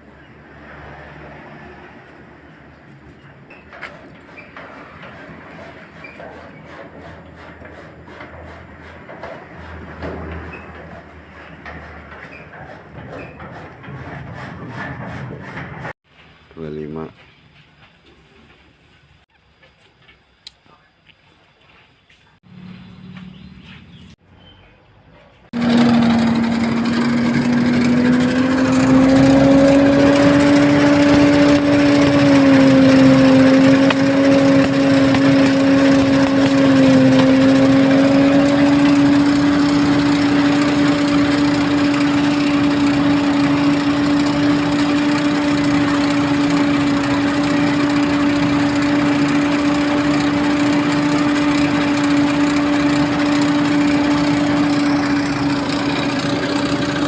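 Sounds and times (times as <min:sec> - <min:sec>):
threshing machine running: 0:25.6 - 0:57.0.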